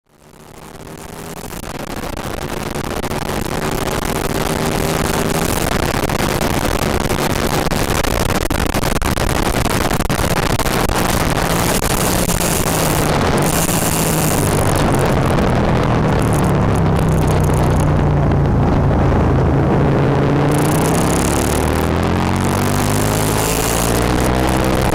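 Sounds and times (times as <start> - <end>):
motorcycle engine running: 0.0 - 24.9
wind noise rushing: 5.3 - 24.9.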